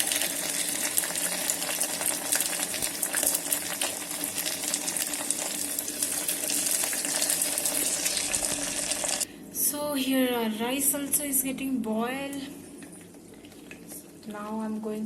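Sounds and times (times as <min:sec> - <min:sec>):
food sizzling in hot oil: 0:00.0 - 0:09.3.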